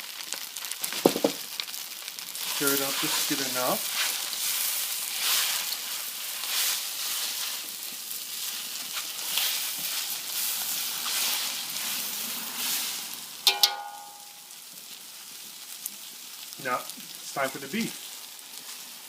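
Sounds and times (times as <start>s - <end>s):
noodles sizzling in a wok: 0.0s - 19.0s
sharp ringing knocks: 13.5s - 14.4s.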